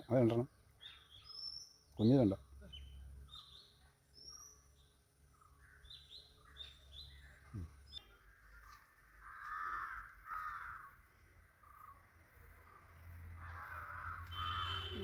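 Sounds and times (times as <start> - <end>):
small birds chirping: 0.0 - 10.9, 11.5 - 15.0
crows cawing: 8.4 - 12.0, 12.7 - 15.0.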